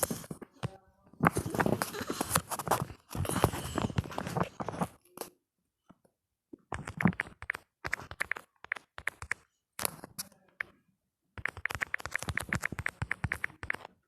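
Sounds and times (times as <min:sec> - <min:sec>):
keyboard typing: 0:06.7 - 0:10.7, 0:11.4 - 0:14.0.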